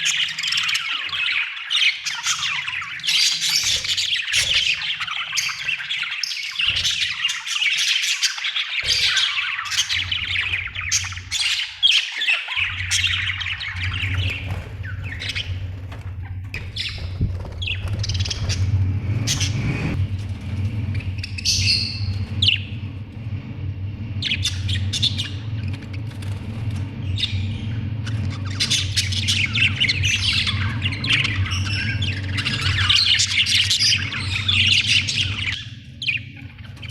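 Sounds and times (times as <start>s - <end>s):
budgerigars chirping and squawking: 0.0s - 23.1s, 24.1s - 36.9s
steady low hum: 8.7s - 36.9s.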